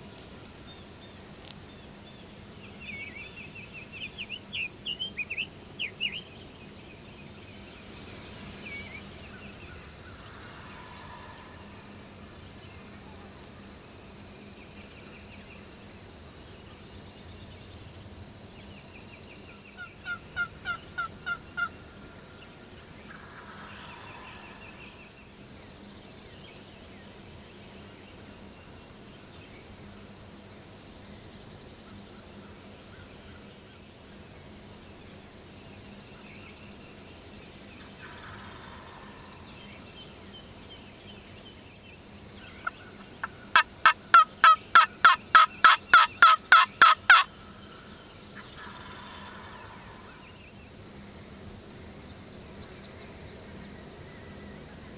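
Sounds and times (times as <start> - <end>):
songbirds chirping: 0.0 - 54.9
distant turkey gobbles: 9.5 - 12.4, 19.8 - 22.1, 37.9 - 39.9, 42.4 - 47.4, 48.4 - 50.4
turkey yelps: 42.6 - 47.3.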